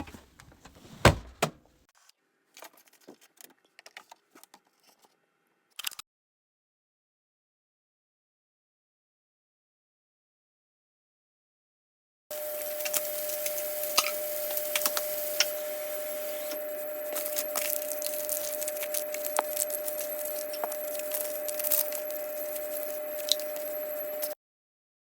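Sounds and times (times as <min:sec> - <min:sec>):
steady hum: 0:12.3 - 0:24.4.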